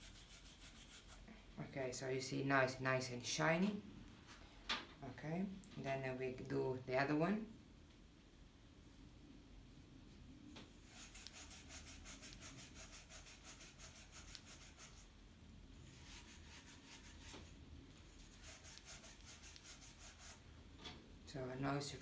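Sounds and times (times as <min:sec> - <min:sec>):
steel wool scrubbing metal pipe: 0:15.8 - 0:17.5, 0:18.1 - 0:20.4.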